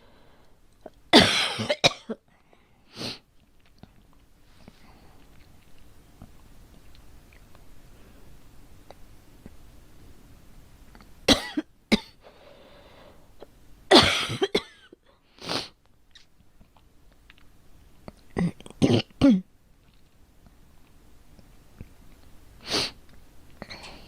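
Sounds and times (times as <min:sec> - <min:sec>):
girl coughing: 0:01.1 - 0:02.2, 0:11.3 - 0:12.2, 0:13.9 - 0:14.9, 0:18.4 - 0:19.5.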